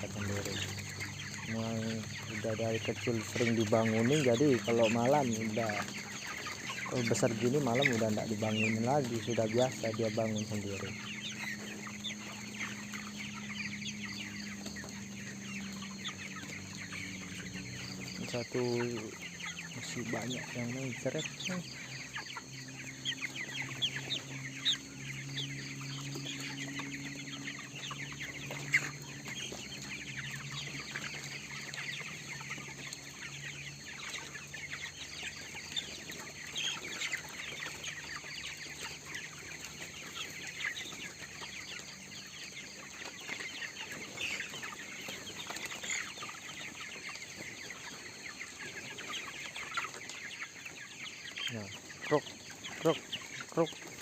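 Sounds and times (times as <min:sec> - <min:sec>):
chickens peeping and chirping: 0:00.0 - 0:54.0.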